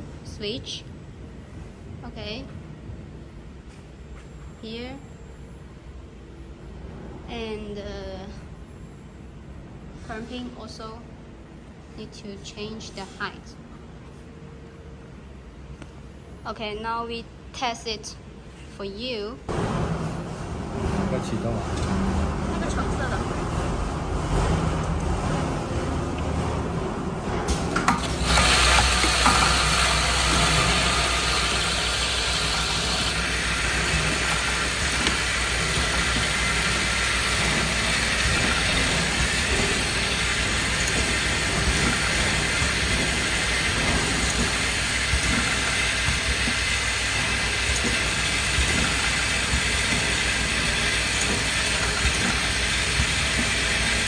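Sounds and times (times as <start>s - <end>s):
filling machine running with hiss: 19.5s - 54.0s.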